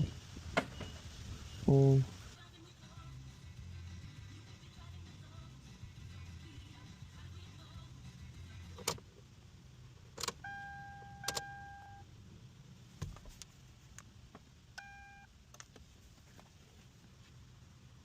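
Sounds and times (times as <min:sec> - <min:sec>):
car alarm electronic beeps: 0:10.4 - 0:12.0, 0:14.8 - 0:15.3.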